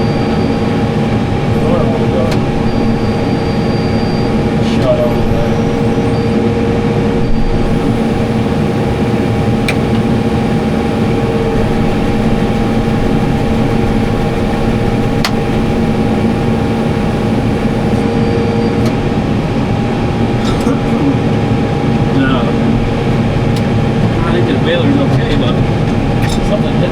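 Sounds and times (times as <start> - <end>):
tractor diesel engine running: 0.0 - 18.2
faint clicks: 7.8 - 18.0.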